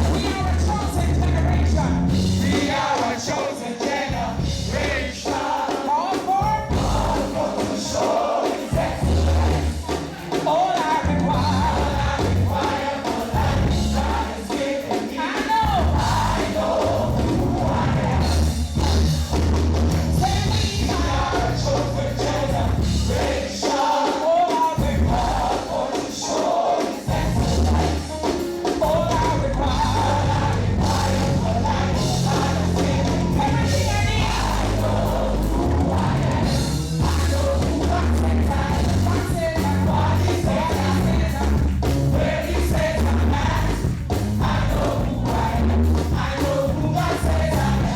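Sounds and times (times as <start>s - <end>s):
band with bass line: 0.0s - 3.4s, 4.1s - 47.9s
singers and choir: 0.0s - 47.9s.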